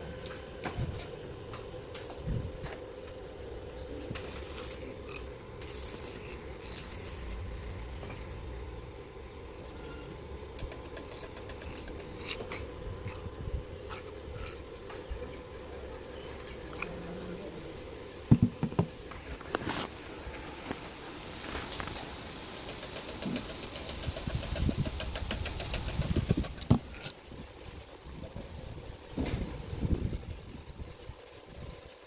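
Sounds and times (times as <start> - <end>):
metal clicks and scraping: 4.1 - 7.3, 9.8 - 17.2, 18.4 - 27.2.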